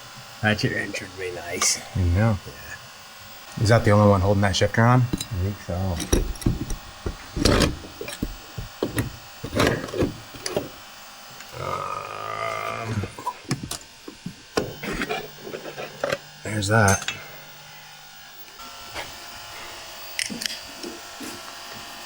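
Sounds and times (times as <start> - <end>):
small power tool whirring: 0.0 - 22.0
hand tools clicking and knocking: 4.8 - 10.8.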